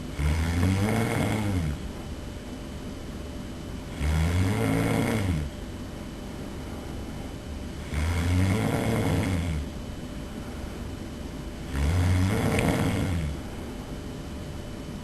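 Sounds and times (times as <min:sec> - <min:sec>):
person snoring loudly: 0:00.1 - 0:01.9, 0:03.9 - 0:05.5, 0:07.8 - 0:09.7, 0:11.7 - 0:13.5.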